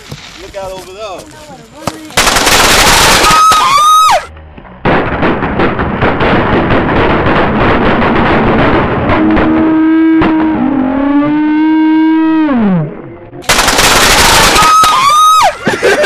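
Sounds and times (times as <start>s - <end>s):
firecrackers crackling: 1.8s - 10.4s, 13.4s - 16.0s
firework whistling blast: 2.4s - 4.3s, 13.6s - 15.6s.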